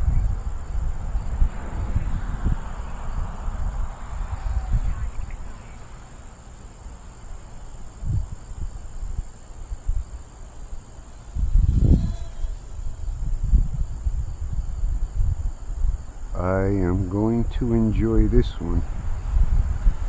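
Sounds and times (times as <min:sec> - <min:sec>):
crickets chirring: 0:00.0 - 0:20.0
wind buffeting microphone: 0:00.0 - 0:20.0
model plane motor whine: 0:10.7 - 0:13.9.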